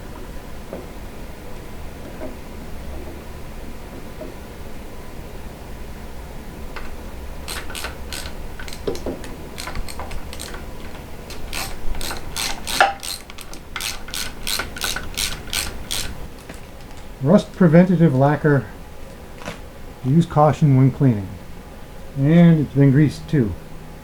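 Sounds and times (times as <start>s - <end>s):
ratchet wrench clicking: 6.8s - 17.1s.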